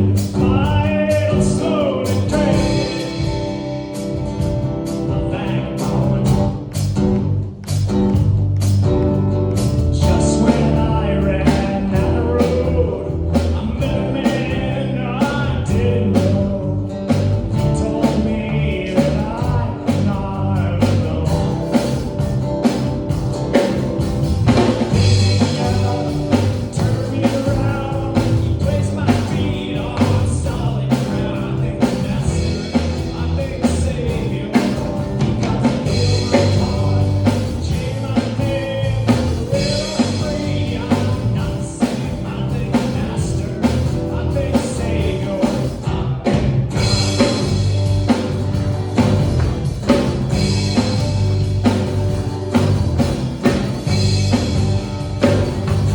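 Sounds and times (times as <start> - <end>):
band playing rock song: 0.0 - 55.9
drum kit beating: 0.0 - 55.9
voices singing: 24.5 - 48.3.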